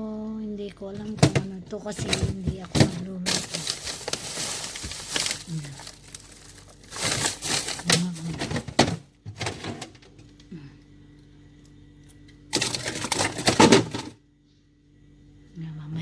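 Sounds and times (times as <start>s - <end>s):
refrigerator hum: 0.0s - 16.0s
food packages rustling and clattering: 0.9s - 10.4s, 12.5s - 14.2s.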